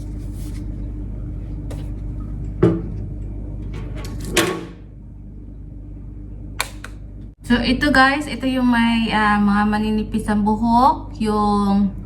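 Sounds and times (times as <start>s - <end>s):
sharp plastic click: 6.6s - 7.0s.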